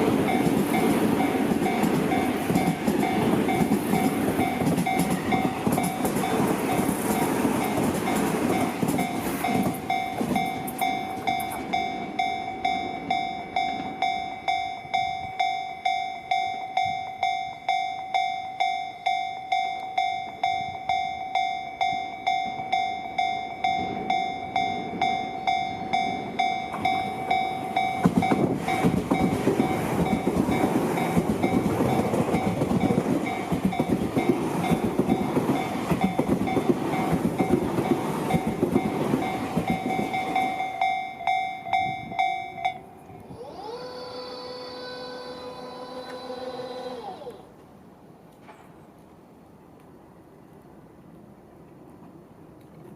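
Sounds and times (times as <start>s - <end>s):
train rumbling with wheel clatter: 0.0s - 18.2s, 19.9s - 44.0s
level-crossing alarm ringing: 0.0s - 47.3s.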